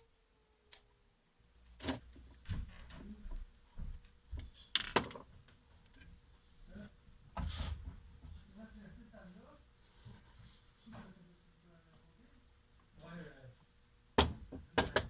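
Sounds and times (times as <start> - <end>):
hard objects knocking on workbench: 14.2 - 15.0.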